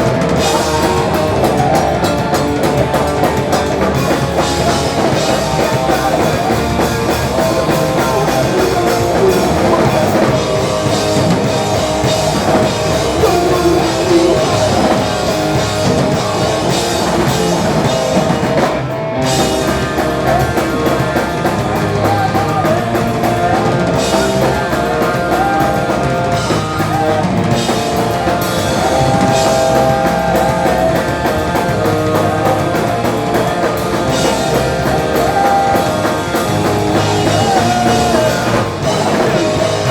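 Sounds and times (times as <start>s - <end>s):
punk rock band playing: 0.0s - 39.9s.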